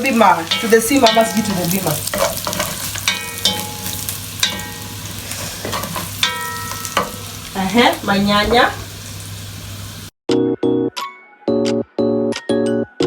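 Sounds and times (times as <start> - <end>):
curry sizzling in a pot: 0.0 - 10.1
spoon clinking on metal pot: 0.4 - 5.0, 5.6 - 7.3.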